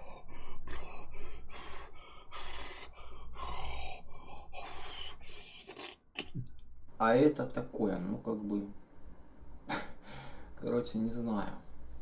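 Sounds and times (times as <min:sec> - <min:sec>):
person whispering breathy bursts: 0:00.0 - 0:06.0.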